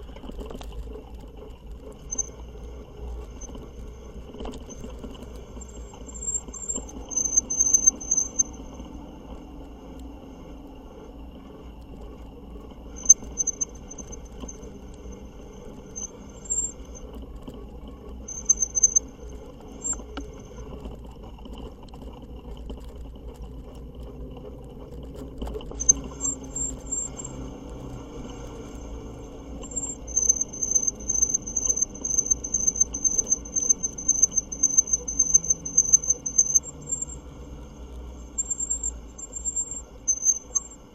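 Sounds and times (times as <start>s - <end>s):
low rumble of riding: 0.0s - 40.9s
pulsing high-pitched squeal: 1.7s - 9.0s, 12.9s - 17.2s, 18.0s - 20.8s, 25.7s - 40.9s.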